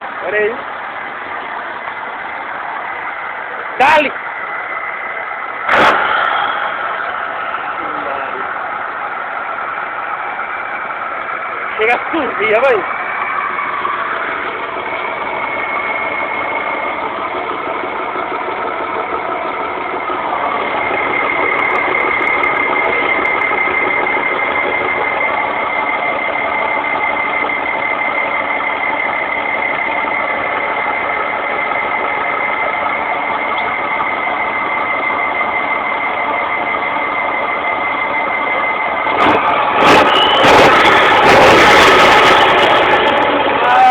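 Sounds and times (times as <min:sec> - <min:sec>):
diesel truck engine running: 0:00.0 - 0:43.9
high whine: 0:03.0 - 0:43.9
brief burst of noise: 0:05.7 - 0:07.5.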